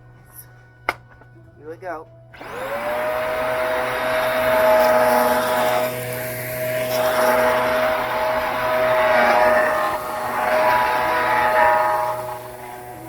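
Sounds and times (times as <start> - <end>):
vacuum cleaner running: 2.4 - 13.0.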